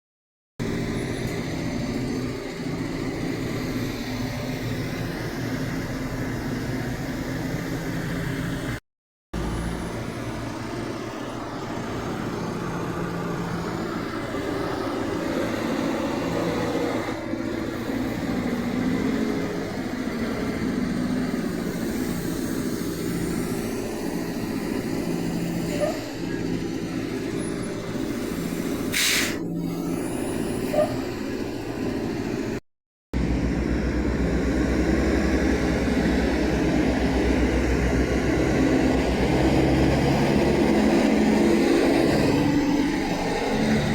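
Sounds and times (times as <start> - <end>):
diesel truck engines humming: 9.4 - 32.4, 33.2 - 43.9.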